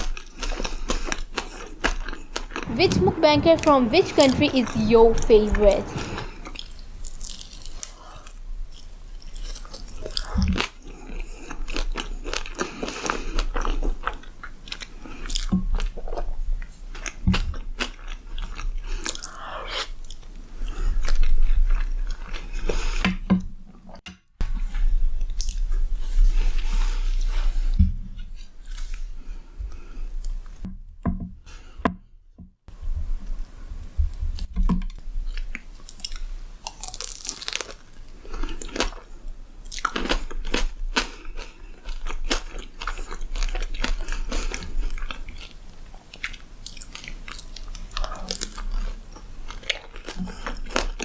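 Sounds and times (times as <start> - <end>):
crunchy bites and chewing: 0.0 - 2.7, 6.0 - 23.0, 35.3 - 51.0.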